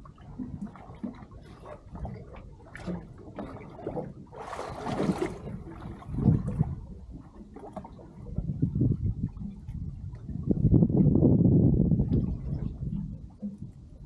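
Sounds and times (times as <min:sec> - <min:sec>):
water splash: 0:00.0 - 0:08.4
water slapping against boat hull: 0:00.0 - 0:14.0.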